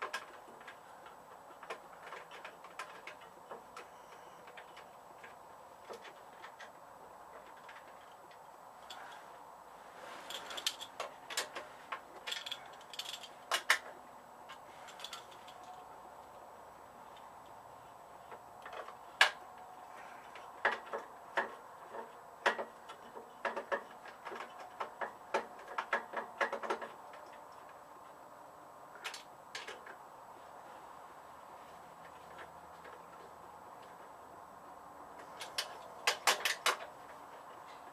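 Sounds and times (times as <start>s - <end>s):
hand tools clicking on metal parts: 0.0s - 9.2s, 10.2s - 16.4s, 20.2s - 27.8s, 35.2s - 37.9s.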